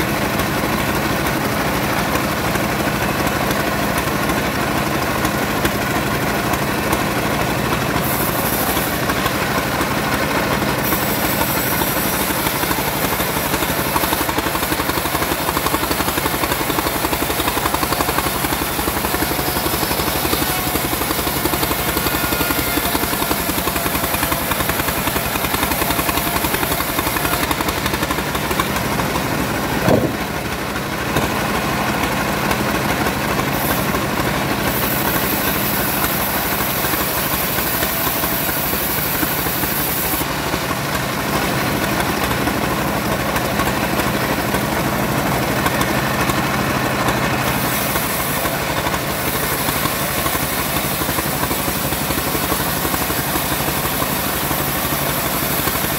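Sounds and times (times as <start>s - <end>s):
bandsaw sawing wood: 4.8s - 55.9s
sharp knock: 29.8s - 30.3s.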